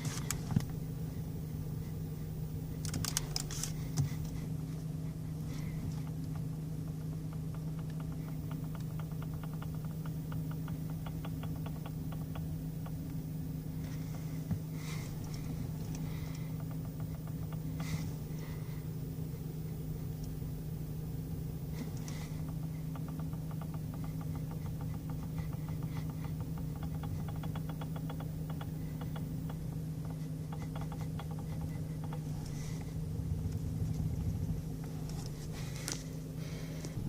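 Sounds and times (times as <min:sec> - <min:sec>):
steering wheel clicking: 0:00.0 - 0:00.8, 0:02.8 - 0:04.4, 0:05.4 - 0:13.2, 0:14.5 - 0:18.2, 0:21.4 - 0:37.0
car engine idling: 0:00.0 - 0:37.0.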